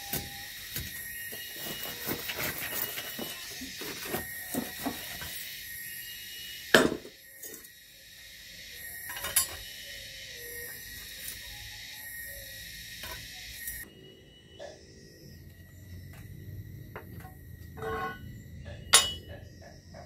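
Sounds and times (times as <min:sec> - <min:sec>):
metal tools clinking and knocking: 0:01.4 - 0:05.3, 0:09.1 - 0:09.6, 0:17.0 - 0:19.4.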